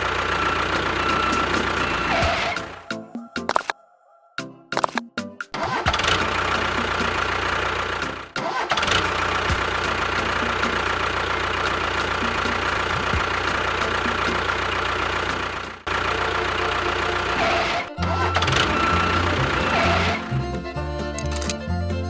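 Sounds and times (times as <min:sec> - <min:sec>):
engine-like machine running: 0:00.0 - 0:02.9, 0:05.6 - 0:22.0.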